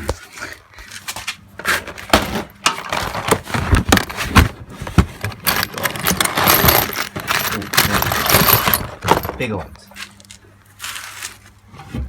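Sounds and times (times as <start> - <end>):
metal rivets clinking and rattling: 2.1 - 10.4.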